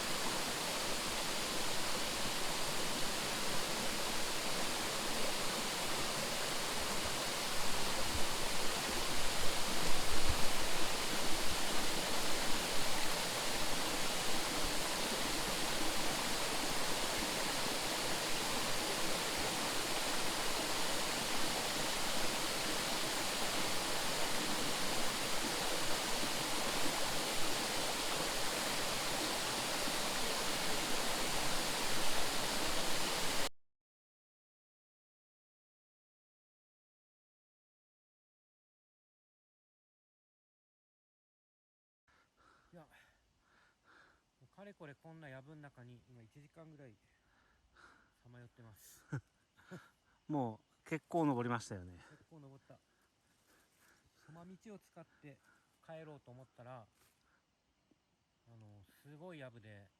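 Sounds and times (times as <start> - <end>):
stream rushing: 0.0 - 33.5.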